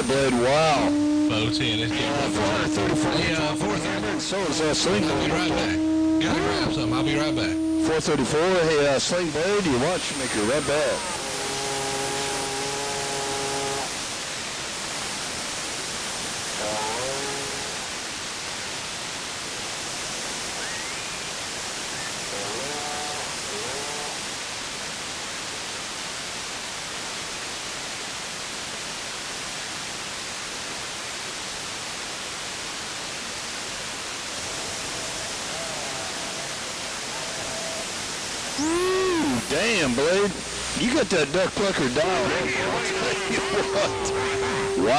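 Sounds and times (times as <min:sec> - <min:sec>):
steady tone: 0:00.0 - 0:12.7, 0:38.4 - 0:44.9
radio static hiss: 0:00.0 - 0:24.6, 0:33.0 - 0:44.9
faint distant radio voices: 0:34.8 - 0:44.9.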